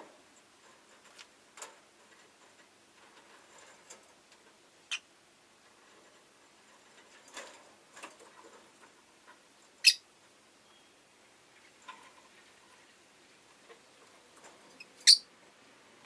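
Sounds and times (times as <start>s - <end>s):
lovebird chirping: 9.8s - 10.0s, 10.6s - 11.0s, 14.8s - 15.3s.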